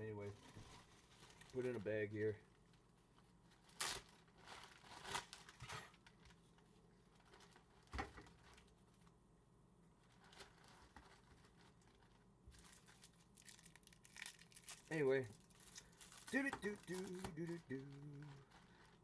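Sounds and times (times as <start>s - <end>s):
bag crinkling: 10.1s - 19.0s.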